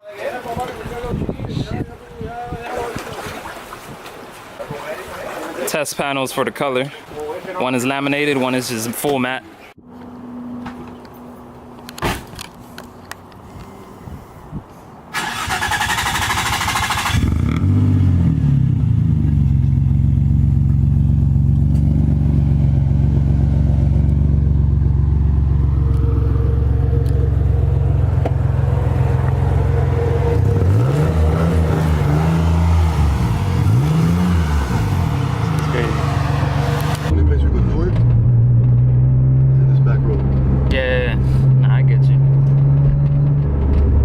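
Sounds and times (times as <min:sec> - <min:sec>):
starter motor cranking: 0:15.2 - 0:17.4
car engine idling and revving: 0:15.4 - 0:44.0.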